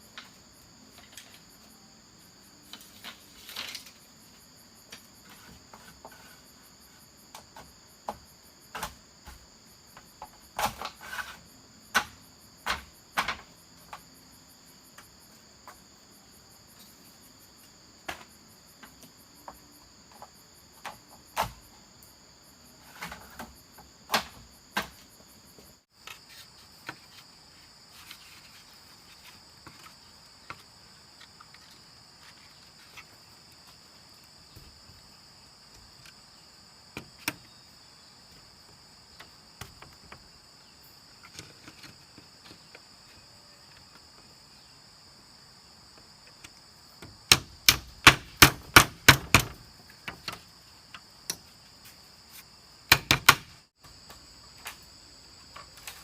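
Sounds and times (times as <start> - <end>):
insect chorus: 0.0 - 56.0
sharp strikes on wood: 11.9 - 13.5, 24.1 - 25.0, 47.3 - 49.6, 52.9 - 53.6.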